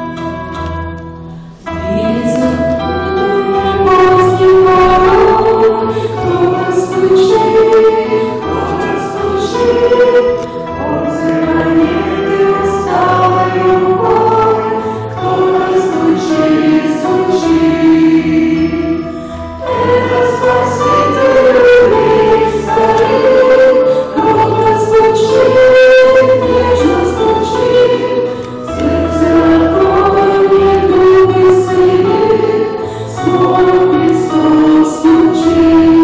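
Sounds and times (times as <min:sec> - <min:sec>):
choir singing a hymn: 0:01.7 - 0:36.0.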